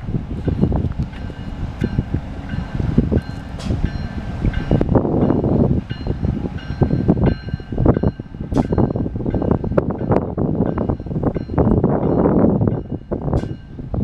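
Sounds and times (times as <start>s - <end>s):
train wheels clattering on track: 0.4s - 14.0s.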